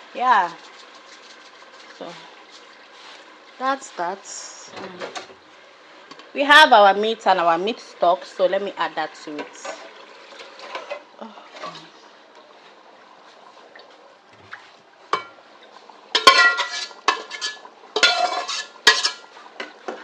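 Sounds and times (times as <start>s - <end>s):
spoon scraping a cooking pot: 16.2s - 19.8s.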